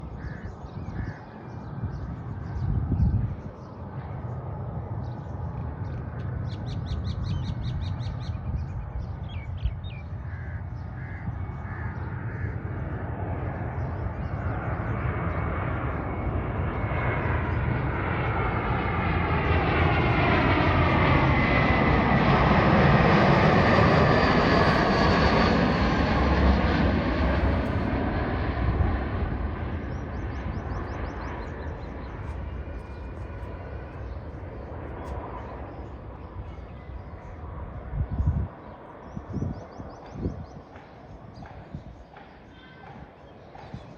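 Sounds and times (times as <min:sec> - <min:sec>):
jet engine landing: 0:00.0 - 0:42.4
crows cawing: 0:00.1 - 0:01.4, 0:10.2 - 0:12.7.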